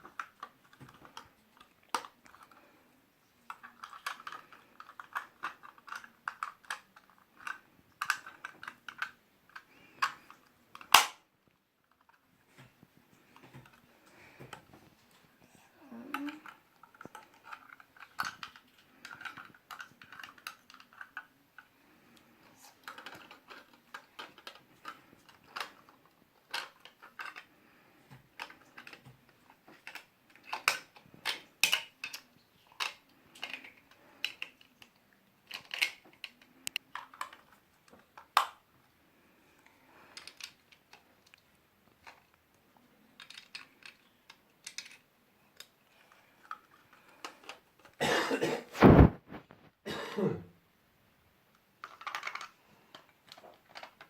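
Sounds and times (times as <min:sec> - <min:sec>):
plastic bricks clicking and rattling: 0:00.0 - 0:02.8, 0:03.4 - 0:11.2, 0:16.0 - 0:38.6, 0:39.9 - 0:42.4, 0:43.0 - 0:48.0, 0:51.8 - 0:54.0.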